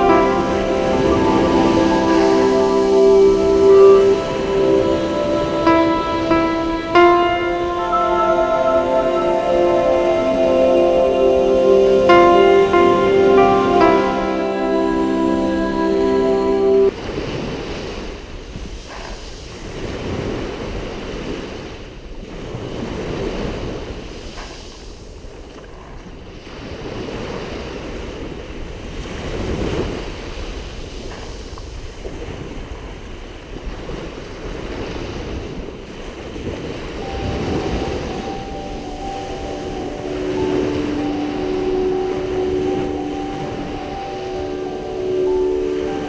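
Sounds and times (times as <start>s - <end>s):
wind on microphone: 33.6s - 46.0s.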